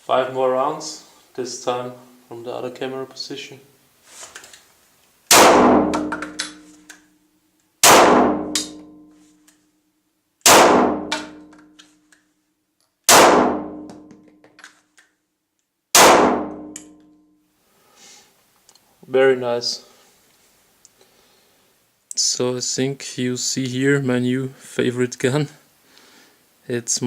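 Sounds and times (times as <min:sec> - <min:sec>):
pistol shots with ringing tail: 0:05.3 - 0:06.6, 0:07.8 - 0:09.0, 0:10.5 - 0:11.4, 0:13.1 - 0:13.9, 0:16.0 - 0:16.8.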